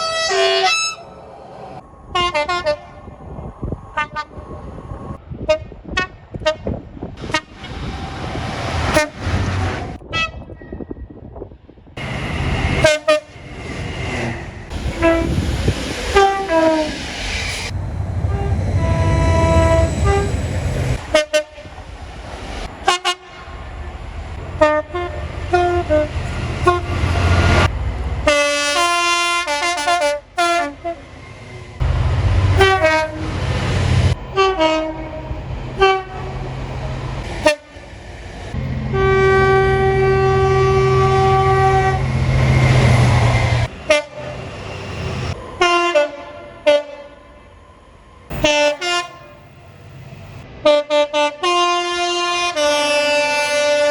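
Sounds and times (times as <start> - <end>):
train horn blasts: 0.0 - 1.1, 2.1 - 3.0, 8.9 - 9.5, 10.1 - 10.5, 12.0 - 13.5, 14.7 - 15.4, 16.1 - 16.9, 18.2 - 21.7, 22.8 - 23.6, 24.3 - 31.0, 31.8 - 36.4, 37.4 - 37.8, 38.5 - 44.4, 45.6 - 47.2, 48.3 - 49.8, 50.6 - 53.9
low rumble: 11.9 - 22.8, 31.0 - 34.4.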